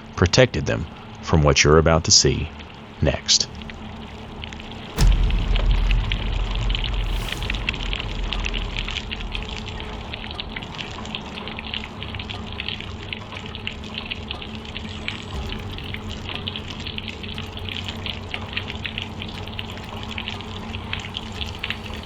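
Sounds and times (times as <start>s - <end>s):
heavy rain pattering: 2.1s - 22.0s
low rumble: 5.0s - 13.3s.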